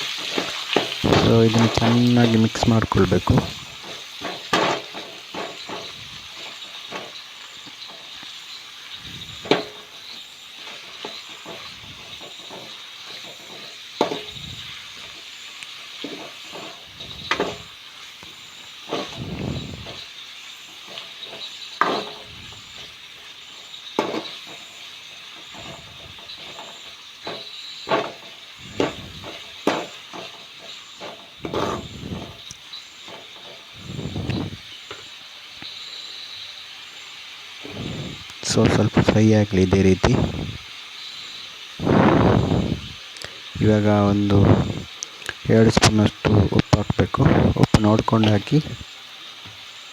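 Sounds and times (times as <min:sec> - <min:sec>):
utensil scraping and knocking pan: 0:00.0 - 0:07.2, 0:09.2 - 0:15.3, 0:15.9 - 0:17.8, 0:20.8 - 0:23.0, 0:24.0 - 0:34.6
vegetables sizzling in hot oil: 0:00.0 - 0:49.9.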